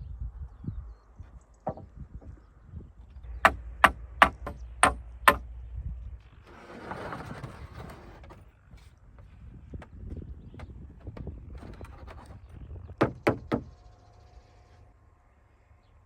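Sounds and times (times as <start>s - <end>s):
sharp strikes on wood: 3.4s - 5.5s, 13.0s - 13.7s
rustling scraping noise: 6.3s - 13.0s.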